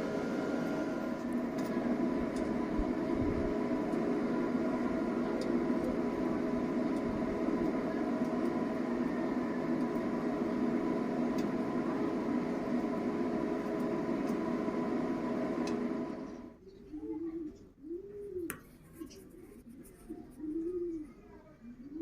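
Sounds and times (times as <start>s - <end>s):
electric welding buzzing hum: 0.0s - 16.5s.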